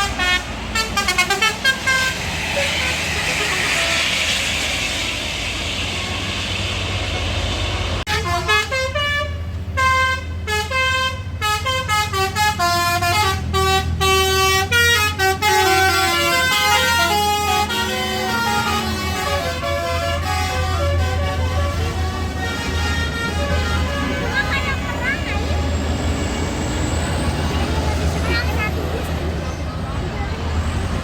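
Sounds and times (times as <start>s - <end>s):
bus horn playing fast melody: 0.0s - 4.1s, 8.1s - 25.2s
bus engine running: 0.0s - 31.0s
road noise: 0.0s - 31.0s.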